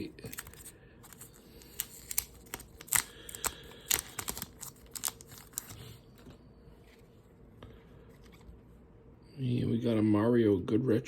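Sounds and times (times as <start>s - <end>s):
cards flicking and rustling: 0.2s - 6.0s.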